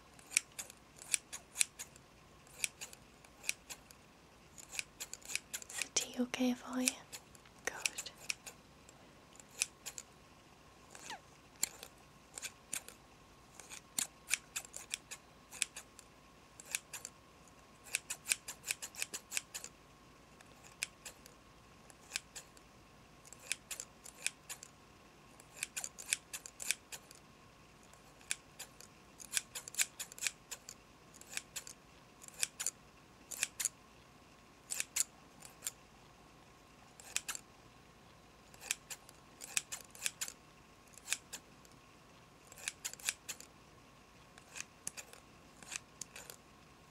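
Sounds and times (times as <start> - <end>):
scissors snipping: 0.2 - 4.0, 4.6 - 6.0, 7.1 - 8.6, 9.4 - 10.1, 10.9 - 13.0, 13.6 - 16.0, 16.6 - 17.1, 17.9 - 19.7, 20.5 - 21.3, 21.9 - 22.6, 23.3 - 24.7, 25.4 - 27.2, 27.9 - 32.7, 33.3 - 33.7, 34.7 - 35.8, 37.0 - 37.4, 38.5 - 41.4, 42.5 - 43.5, 44.4 - 46.4.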